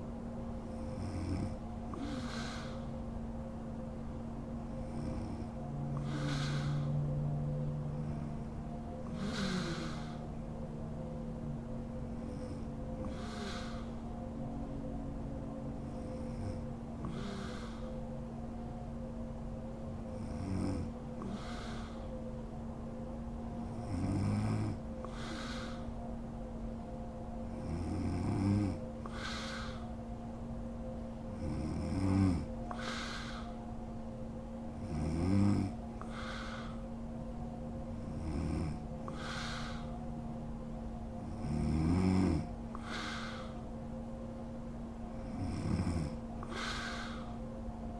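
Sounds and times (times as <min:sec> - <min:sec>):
steady background hum: 0:00.0 - 0:47.9
breathy hiss of breath: 0:00.6 - 0:03.1, 0:04.8 - 0:07.1, 0:09.0 - 0:10.4, 0:12.2 - 0:14.1, 0:15.9 - 0:18.2, 0:21.2 - 0:22.4, 0:25.0 - 0:26.1, 0:29.0 - 0:30.1, 0:32.6 - 0:33.9, 0:36.0 - 0:37.0, 0:38.7 - 0:40.1, 0:42.3 - 0:43.8, 0:45.2 - 0:47.6
woman snoring: 0:00.7 - 0:02.9, 0:04.8 - 0:07.0, 0:09.0 - 0:10.3, 0:12.2 - 0:14.0, 0:16.0 - 0:17.8, 0:23.8 - 0:25.9, 0:31.4 - 0:33.5, 0:34.8 - 0:36.8, 0:38.0 - 0:39.9, 0:41.2 - 0:43.6, 0:45.2 - 0:47.3.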